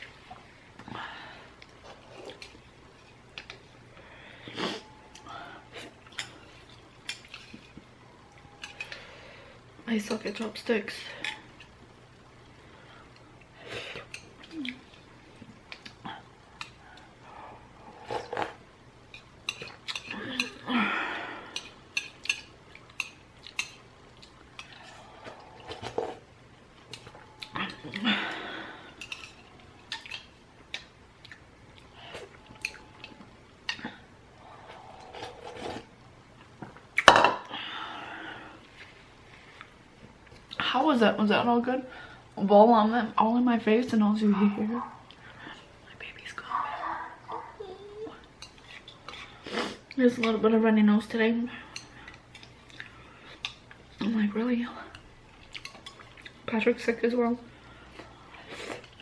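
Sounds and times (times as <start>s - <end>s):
person chewing noodles: 21.4s - 37.0s, 51.8s - 53.8s
person slurping noodles: 34.4s - 35.9s.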